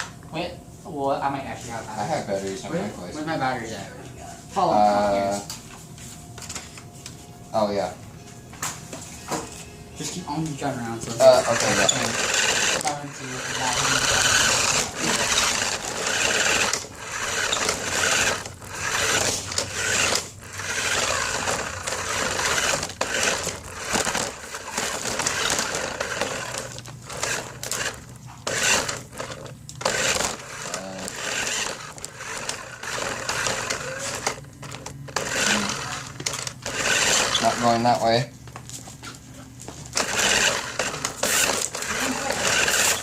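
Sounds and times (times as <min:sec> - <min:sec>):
toy car motor whirring: 0:11.0 - 0:37.9, 0:40.0 - 0:43.0.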